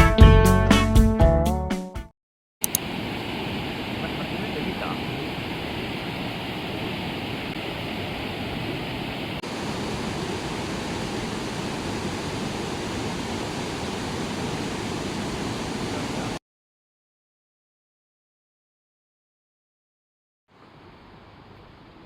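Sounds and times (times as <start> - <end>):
waterfall rushing: 2.7 - 16.4.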